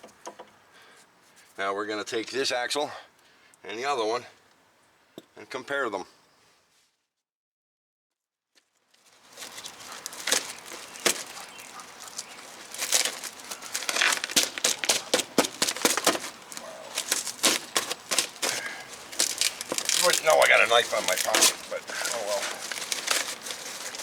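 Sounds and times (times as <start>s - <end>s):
packaging crinkling and tearing: 8.9s - 24.0s.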